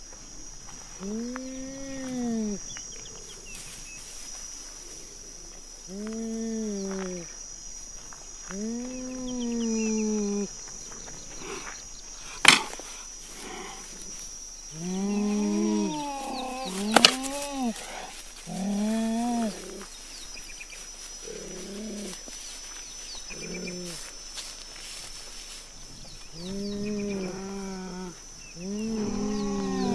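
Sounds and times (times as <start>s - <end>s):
big cat calls: 14.7s - 19.9s, 26.4s - 29.9s.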